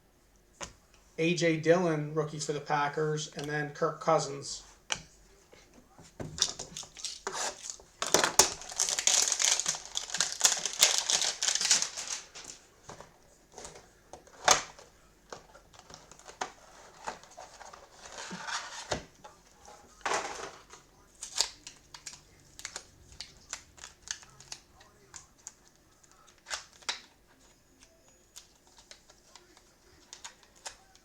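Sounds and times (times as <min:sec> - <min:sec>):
cards clicking and rustling: 0:04.9 - 0:31.0
packaging crinkling and tearing: 0:06.4 - 0:12.6, 0:20.6 - 0:31.0.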